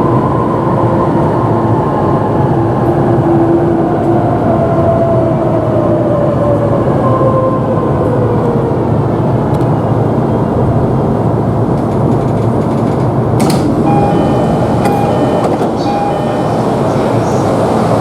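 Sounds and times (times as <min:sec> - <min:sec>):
train noise at platform: 0:00.0 - 0:18.0
falling whine: 0:13.7 - 0:18.0
electronic door chime: 0:13.8 - 0:17.8.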